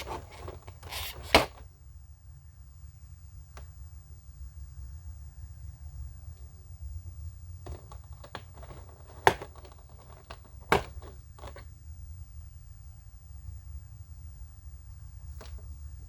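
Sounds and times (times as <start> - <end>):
packaging clicks and taps: 0.0 - 1.6, 7.7 - 11.6.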